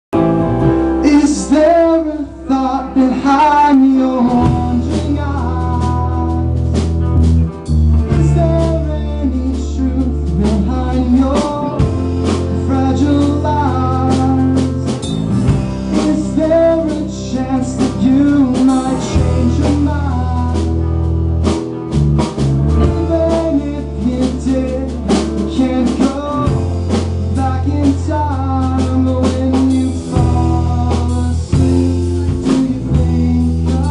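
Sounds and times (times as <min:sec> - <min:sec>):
drum kit: 0:00.1 - 0:33.9
guitar: 0:00.1 - 0:33.9
low bass notes: 0:00.1 - 0:33.9.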